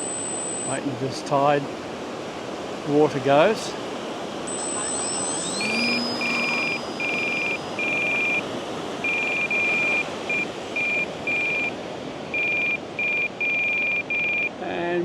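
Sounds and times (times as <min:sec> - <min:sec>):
high electronic beeps: 0:00.0 - 0:00.8, 0:04.5 - 0:11.7
rising whine: 0:00.0 - 0:00.8, 0:04.5 - 0:10.4
surf noise: 0:00.0 - 0:15.0.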